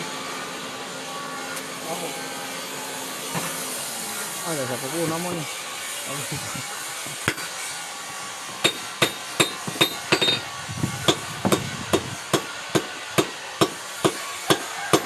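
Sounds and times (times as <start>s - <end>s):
hammer striking blade on anvil: 7.3s - 7.5s, 8.6s - 10.4s, 11.1s - 15.0s.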